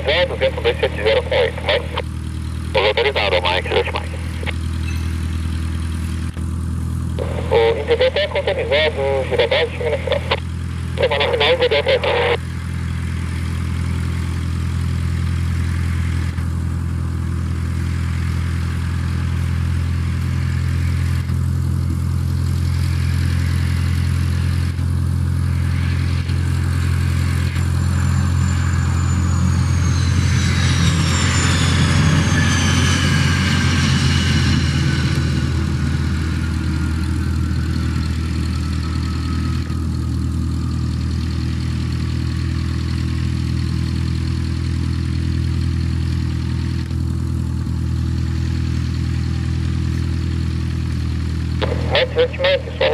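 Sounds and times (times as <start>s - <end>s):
low engine hum: 0.0s - 52.9s
jet whine passing: 25.4s - 40.8s.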